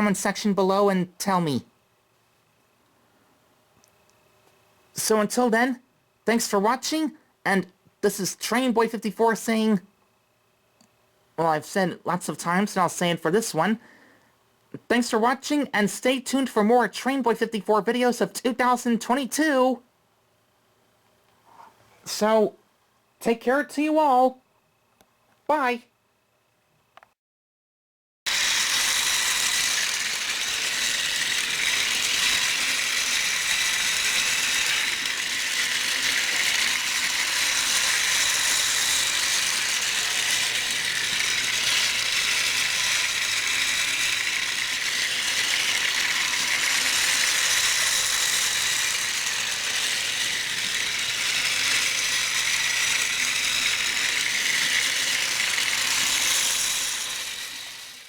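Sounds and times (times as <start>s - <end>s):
toy train motor whirring: 3.9s - 9.8s, 15.0s - 19.5s, 28.3s - 58.0s.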